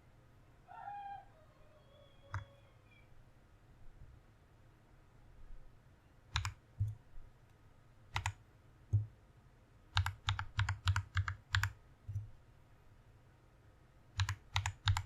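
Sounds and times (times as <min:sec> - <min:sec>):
mechanical keyboard keystrokes: 0:06.3 - 0:06.6, 0:08.1 - 0:08.4, 0:09.9 - 0:11.8, 0:14.2 - 0:15.0.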